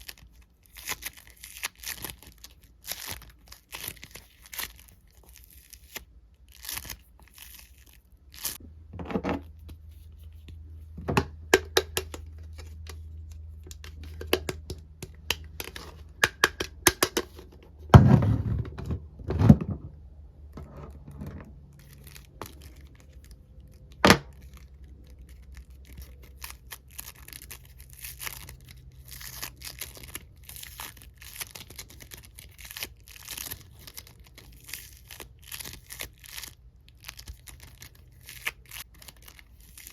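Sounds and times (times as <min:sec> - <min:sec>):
foam toy crinkling and rustling: 0:00.0 - 0:08.6, 0:09.4 - 0:11.0, 0:11.8 - 0:17.9, 0:21.5 - 0:39.9.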